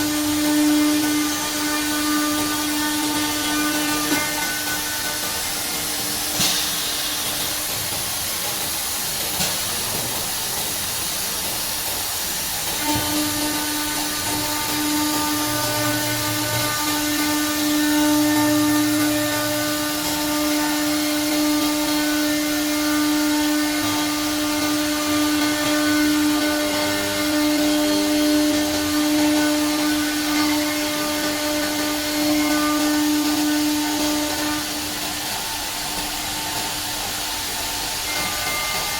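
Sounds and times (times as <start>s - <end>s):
router spindle whine: 12.8s - 35.0s.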